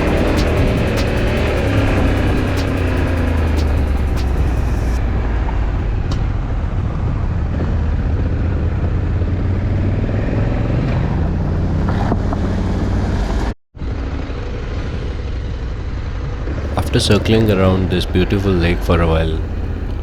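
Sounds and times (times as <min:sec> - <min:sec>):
motorcycle engine running: 0:00.0 - 0:06.0
wind and tyre rush: 0:00.0 - 0:18.8.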